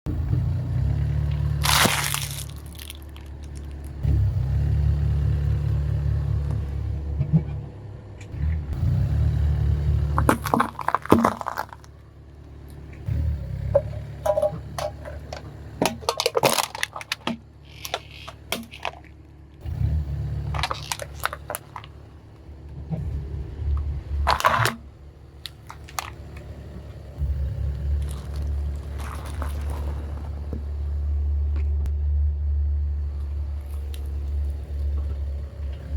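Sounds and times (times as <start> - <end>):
car engine running: 0.0 - 35.9
tyres crushing crunchy objects: 1.2 - 4.0, 10.0 - 19.2, 19.8 - 23.3, 24.1 - 31.6, 33.0 - 35.9.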